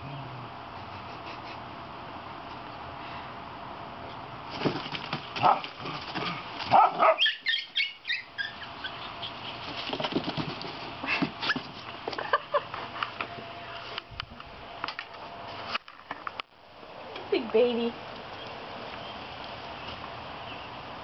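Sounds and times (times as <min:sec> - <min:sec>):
dogs barking: 0:05.4 - 0:09.7
dogs yipping and whimpering: 0:06.7 - 0:09.8.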